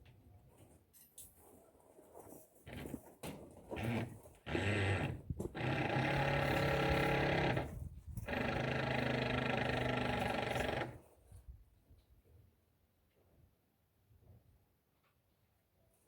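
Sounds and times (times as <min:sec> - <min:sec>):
machine motor running: 0:03.8 - 0:11.0.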